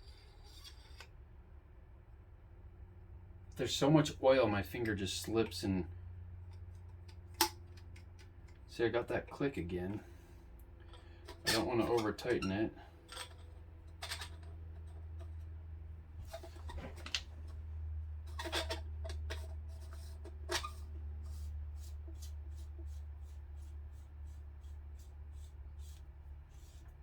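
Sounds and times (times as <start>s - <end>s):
steady low hum: 0.0s - 27.0s
metal parts clicking and scraping: 10.9s - 15.4s, 18.3s - 20.8s.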